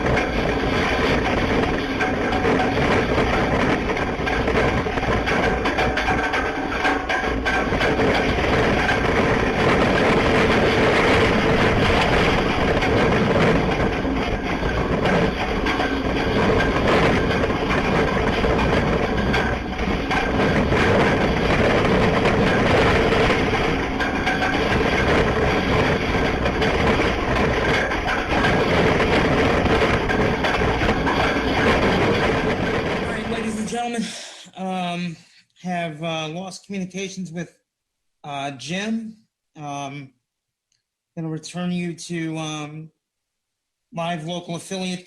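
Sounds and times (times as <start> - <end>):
hurricane winds rushing: 0.0 - 35.2.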